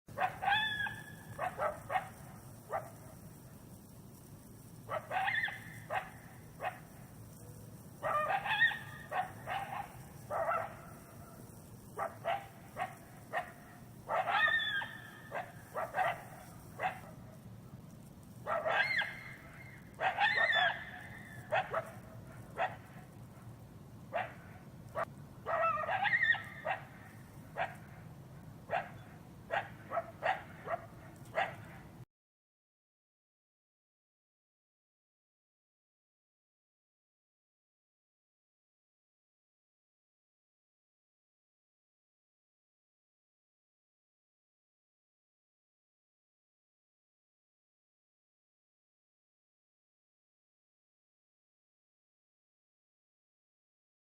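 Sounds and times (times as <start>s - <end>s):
animal calling and yipping: 0.2s - 3.0s, 4.9s - 7.4s, 8.0s - 17.1s, 18.5s - 23.0s, 24.1s - 27.9s.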